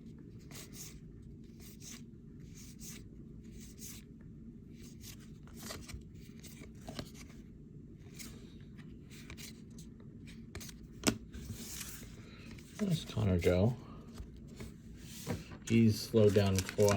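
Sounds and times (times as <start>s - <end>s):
steady low hum: 0.0s - 16.9s
cards sliding papery swishes: 10.5s - 12.9s, 14.5s - 16.9s.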